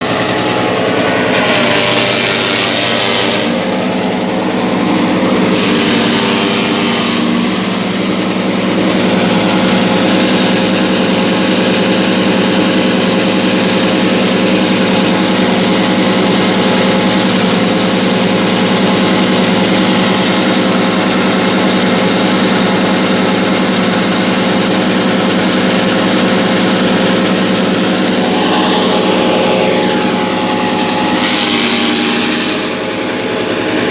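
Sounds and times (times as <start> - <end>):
wood chipper running: 0.0 - 33.9.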